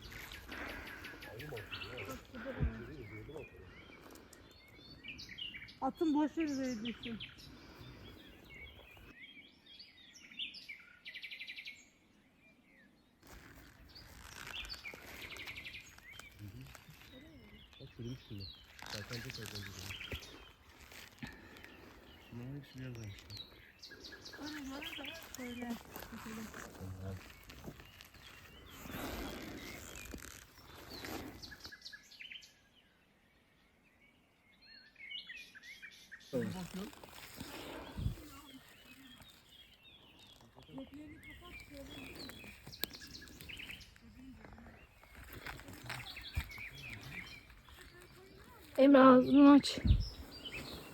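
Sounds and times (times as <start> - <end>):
faint outdoor background noise: 0.0 - 50.9
small birds chirping: 0.0 - 50.9
broad rustling noise: 13.2 - 23.5, 24.2 - 31.7, 36.4 - 40.6.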